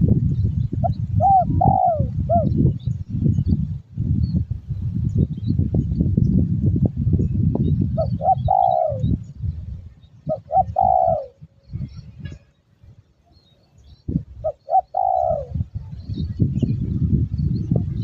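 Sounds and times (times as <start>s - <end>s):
dove cooing: 0.8s - 2.8s, 7.9s - 9.3s, 10.2s - 11.5s, 14.4s - 16.1s.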